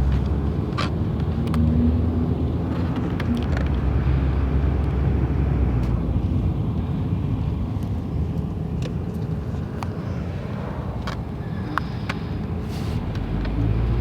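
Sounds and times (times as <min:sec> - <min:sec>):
steady low rumble: 0:09.9 - 0:14.0.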